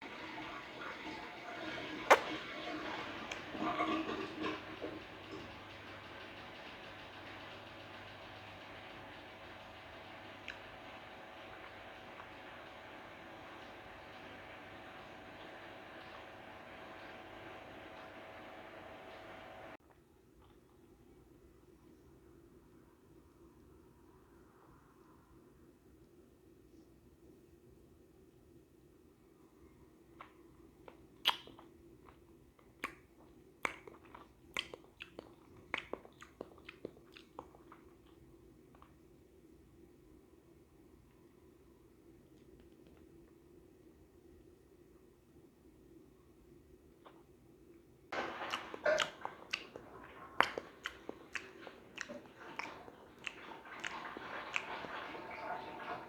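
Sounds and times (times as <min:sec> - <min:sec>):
person chewing crunchily: 0:30.2 - 0:39.0, 0:48.2 - 0:56.0.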